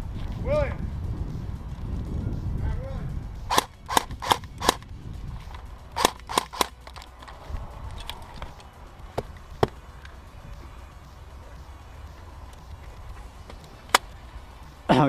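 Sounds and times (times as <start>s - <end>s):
airsoft gun shots: 3.5s - 4.8s, 6.0s - 6.8s.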